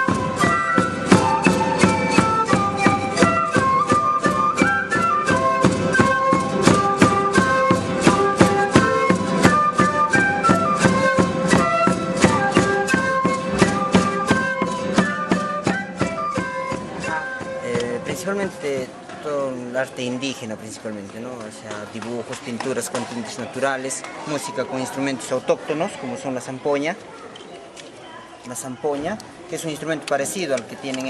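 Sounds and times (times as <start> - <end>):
flute melody: 0.0 - 19.6
percussion beat: 0.0 - 25.0.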